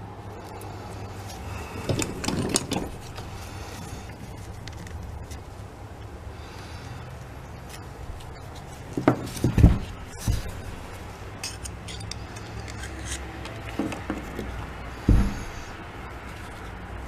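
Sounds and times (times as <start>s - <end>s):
metal parts clinking: 1.7s - 3.3s, 9.2s - 13.2s.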